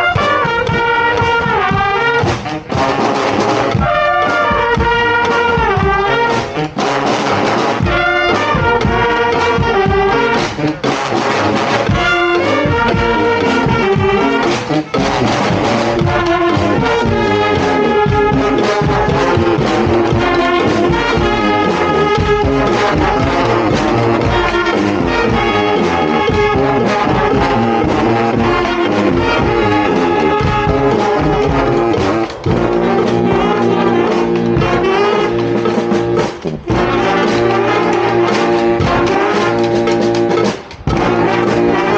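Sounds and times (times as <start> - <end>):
brass horns playing: 0.0 - 41.9
percussion steady beat: 0.0 - 41.9.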